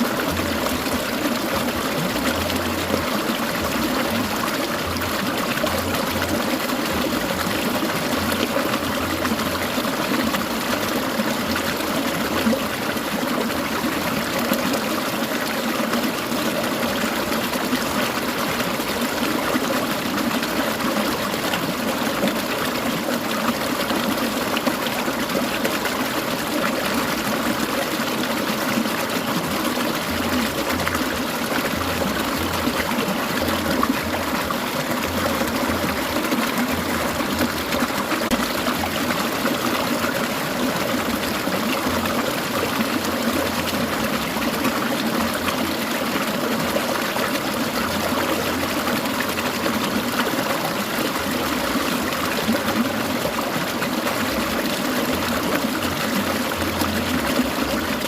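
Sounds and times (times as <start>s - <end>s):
stream trickling and gurgling: 0.0s - 58.0s.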